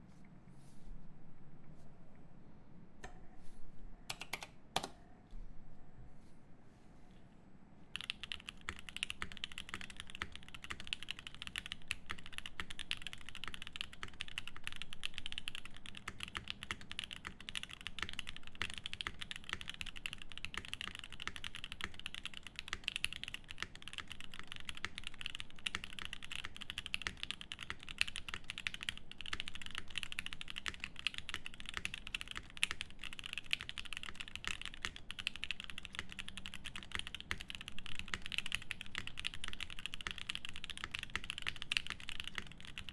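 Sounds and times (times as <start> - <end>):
fast mechanical keyboard typing: 4.1 - 5.0, 8.0 - 42.9.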